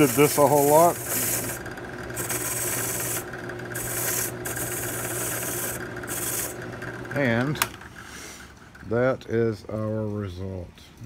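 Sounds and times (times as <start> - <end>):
wire brush scrubbing metal: 0.0 - 6.6.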